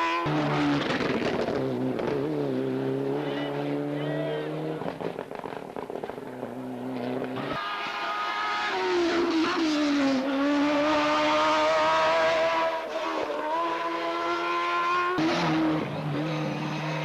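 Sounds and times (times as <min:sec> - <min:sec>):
racing car engine accelerating: 0:00.0 - 0:17.0.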